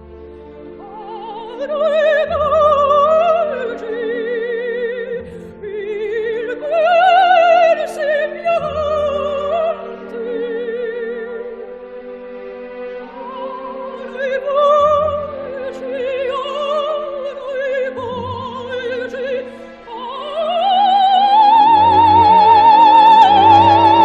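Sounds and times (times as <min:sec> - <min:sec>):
orchestral accompaniment: 0:00.0 - 0:24.0
operatic singing with vibrato: 0:00.5 - 0:24.0.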